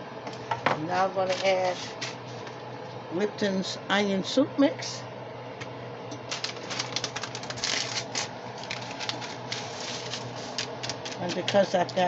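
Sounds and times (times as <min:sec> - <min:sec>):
paper packet crinkling: 0:06.2 - 0:11.8.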